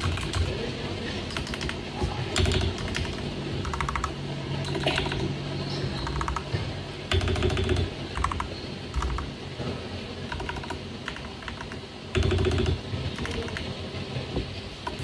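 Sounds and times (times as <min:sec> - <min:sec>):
mechanical keyboard typing: 0:00.0 - 0:00.6, 0:01.3 - 0:05.3, 0:06.0 - 0:06.5, 0:07.1 - 0:09.3, 0:10.3 - 0:13.7.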